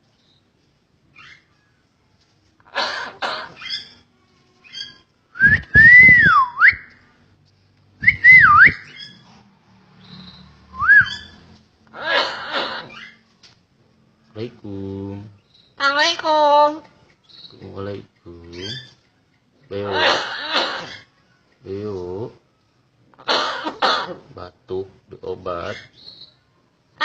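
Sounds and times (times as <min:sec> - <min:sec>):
myna whistling: 0:05.3 - 0:06.9, 0:08.0 - 0:09.2, 0:10.7 - 0:11.4.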